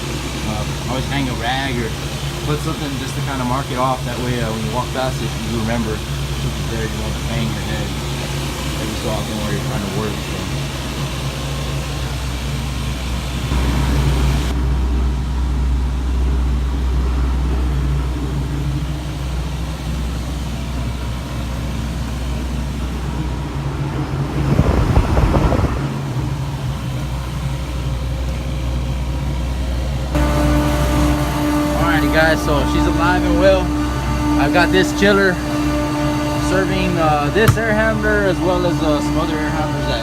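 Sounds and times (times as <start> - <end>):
rough rumble: 0.0 - 30.2, 36.1 - 38.3
chiller plant humming: 0.0 - 40.0.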